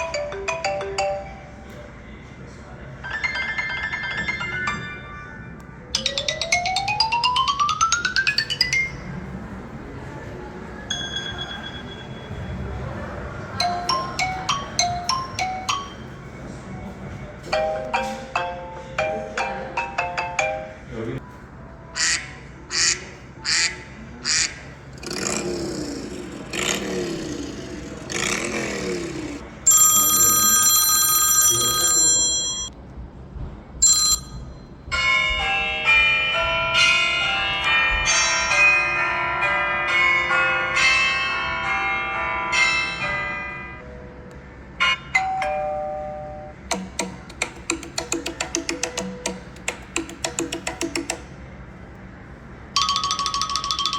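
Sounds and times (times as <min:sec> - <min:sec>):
phone ringtones: 0:29.7 - 0:32.7, 0:33.8 - 0:34.4, 0:52.8 - 0:53.9.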